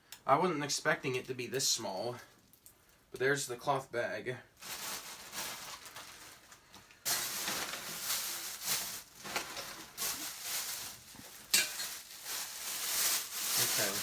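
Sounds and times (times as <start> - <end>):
packing material rustling: 4.6 - 14.0.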